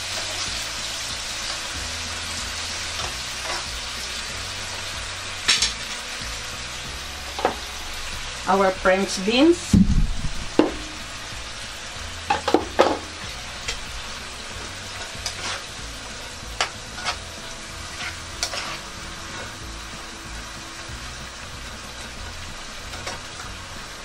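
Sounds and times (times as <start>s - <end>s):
food sizzling in a pan: 0.0s - 24.0s
utensil scraping a pan: 2.9s - 3.8s, 12.3s - 19.7s.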